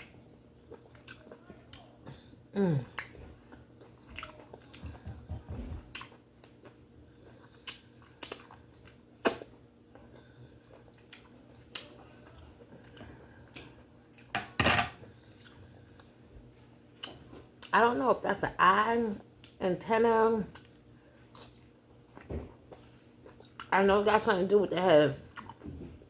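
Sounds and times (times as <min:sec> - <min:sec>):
chewing with wet mouth clicks: 0:00.0 - 0:02.0, 0:02.9 - 0:05.1, 0:05.8 - 0:14.3, 0:17.0 - 0:17.7, 0:19.4 - 0:19.6, 0:20.5 - 0:23.7, 0:25.3 - 0:25.6.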